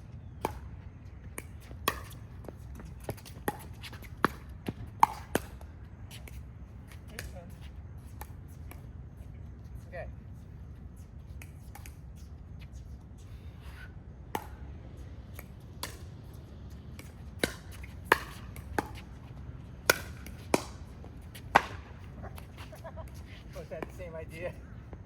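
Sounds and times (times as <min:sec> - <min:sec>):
ball bouncing on court: 0:01.3 - 0:05.6.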